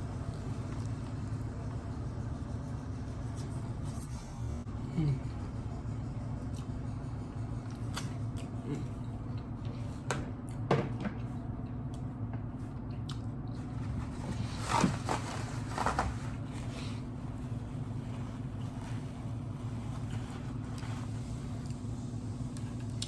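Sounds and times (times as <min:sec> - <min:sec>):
low steady hum: 0:00.0 - 0:23.0
chewing and mouth smacking: 0:12.8 - 0:13.6.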